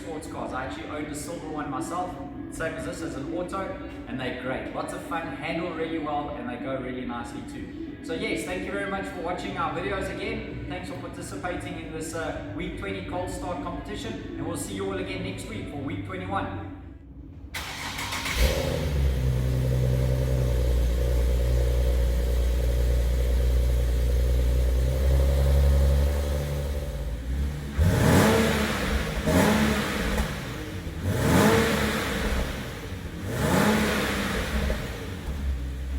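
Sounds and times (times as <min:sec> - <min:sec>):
car engine idling and revving: 0:17.6 - 0:35.9.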